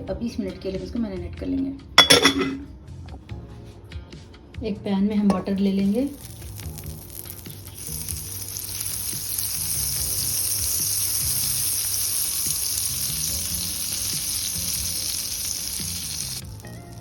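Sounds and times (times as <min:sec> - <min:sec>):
faint background music: 0:00.0 - 0:17.0
butter sizzling in a pan: 0:05.6 - 0:17.0.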